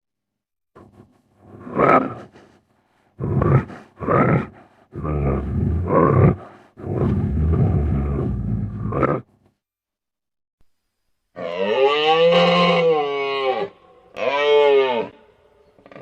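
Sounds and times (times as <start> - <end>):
deep monster roars and grunts: 3.2 - 9.2.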